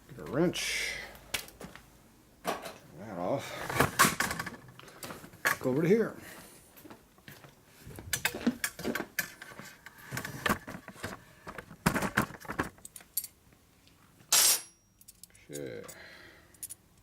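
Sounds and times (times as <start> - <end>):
tools clattering: 14.3 - 16.0.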